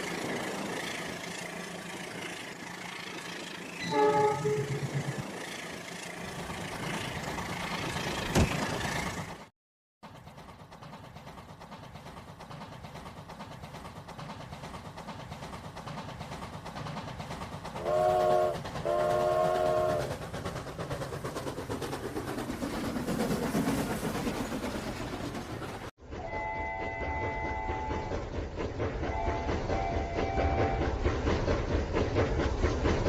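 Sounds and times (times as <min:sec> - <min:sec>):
train rumbling: 0:00.0 - 0:33.0
train horn blasts: 0:03.8 - 0:04.9, 0:17.8 - 0:20.0, 0:26.2 - 0:28.1, 0:29.1 - 0:30.8.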